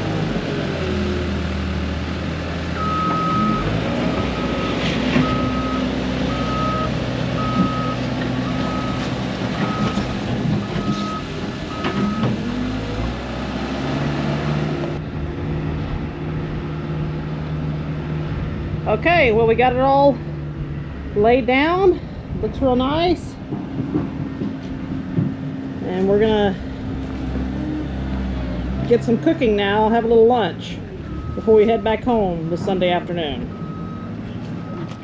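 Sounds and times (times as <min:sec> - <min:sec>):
backup alarm beeping: 0:02.8 - 0:03.7, 0:04.4 - 0:09.0, 0:31.1 - 0:35.0.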